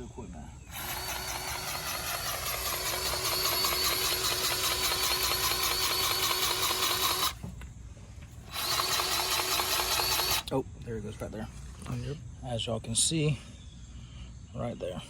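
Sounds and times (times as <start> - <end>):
grease gun motor pulsing: 0.7 - 7.5, 8.4 - 10.5.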